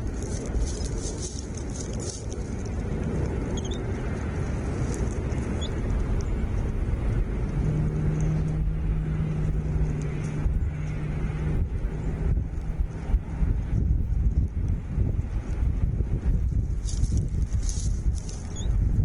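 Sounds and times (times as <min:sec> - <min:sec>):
low outdoor rumble: 0:00.0 - 0:19.0
vehicle engine hum: 0:00.0 - 0:19.0.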